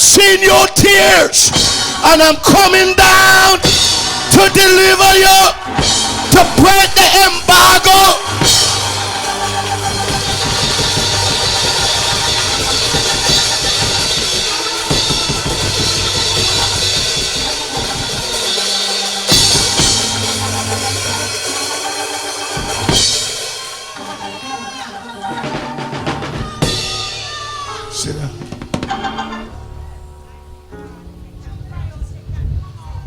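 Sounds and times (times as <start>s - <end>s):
church band music: 0.0s - 32.8s
cymbal crashes: 3.4s - 24.3s.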